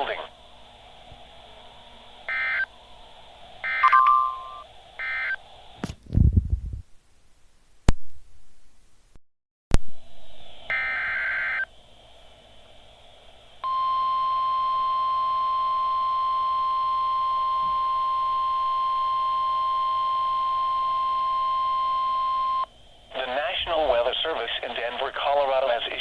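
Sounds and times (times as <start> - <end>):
steady warning alarm beep: 2.3 - 2.7, 3.6 - 5.4, 10.7 - 11.7, 13.6 - 22.7
warbling digital data tones: 3.7 - 5.4.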